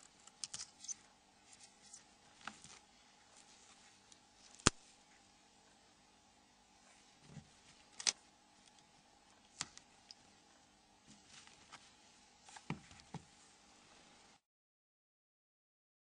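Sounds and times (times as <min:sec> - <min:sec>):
soft rustling: 0:00.8 - 0:05.8, 0:10.2 - 0:14.2.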